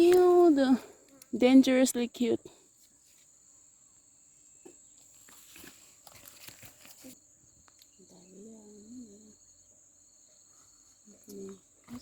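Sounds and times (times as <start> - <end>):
insect drone: 0.0 - 12.0
faint rustling and crackling: 5.0 - 7.2.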